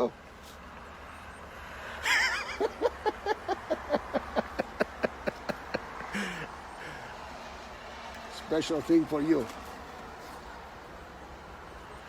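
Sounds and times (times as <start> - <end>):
person laughing: 2.0 - 7.0.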